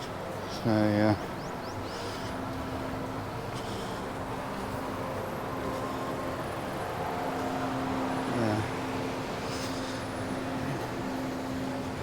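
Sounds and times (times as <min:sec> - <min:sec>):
passing vehicles hum: 0:00.0 - 0:12.0.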